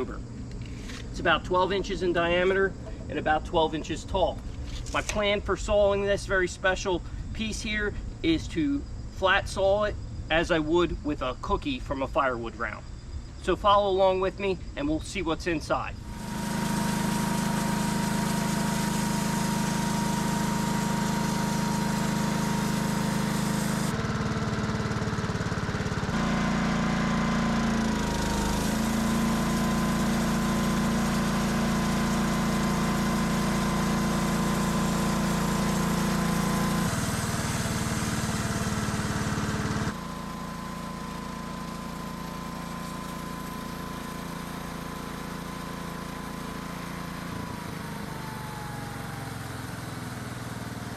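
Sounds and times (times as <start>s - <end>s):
small engine running: 16.0s - 50.9s.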